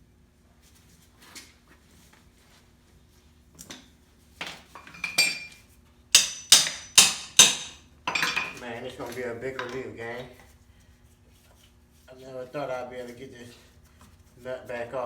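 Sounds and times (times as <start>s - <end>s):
metal tools striking metal: 6.2s - 8.6s.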